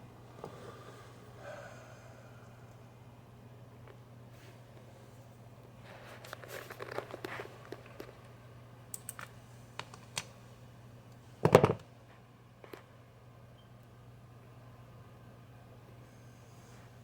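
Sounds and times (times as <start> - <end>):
faint low hum: 0.0 - 17.0
small parts rustling and clicking: 6.2 - 8.2.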